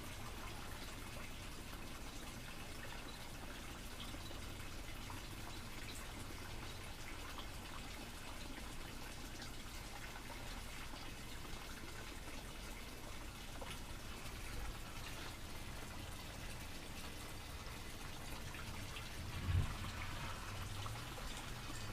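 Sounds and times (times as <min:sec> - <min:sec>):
drips and light taps: 0:00.0 - 0:21.9
rain pattering: 0:00.0 - 0:21.9
low rumble: 0:19.1 - 0:21.0.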